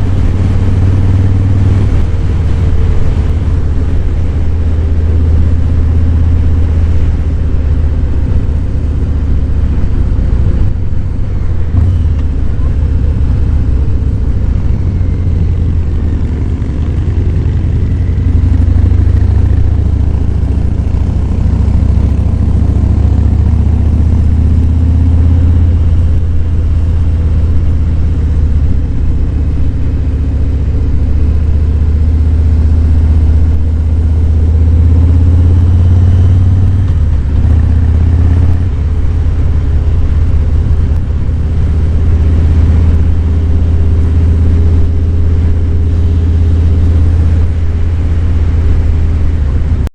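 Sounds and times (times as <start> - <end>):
motorcycle engine rumbling: 0.0 - 49.9.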